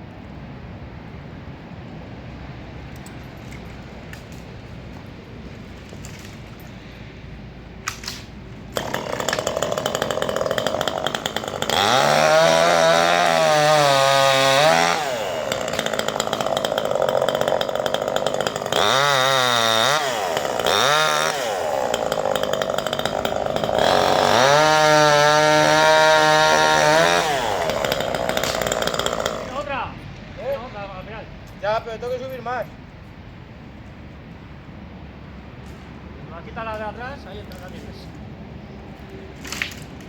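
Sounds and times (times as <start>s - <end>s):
chainsaw revving and cutting: 8.7s - 29.9s.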